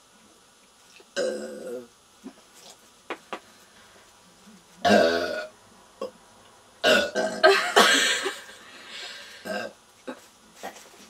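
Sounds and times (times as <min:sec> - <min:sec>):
women burping loudly: 0:04.8 - 0:06.1, 0:06.8 - 0:08.4, 0:09.4 - 0:10.2.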